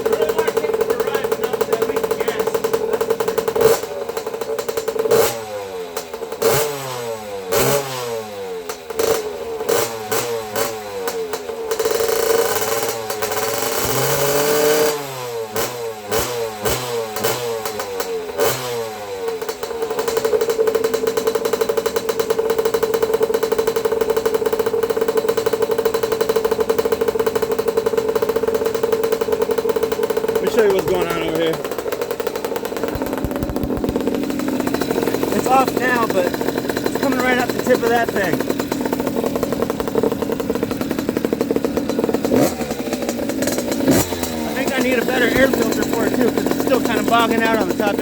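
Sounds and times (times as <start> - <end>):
small motorbike engine revving: 0.0 - 48.0
person talking: 30.4 - 31.6, 35.3 - 38.4, 44.5 - 48.0.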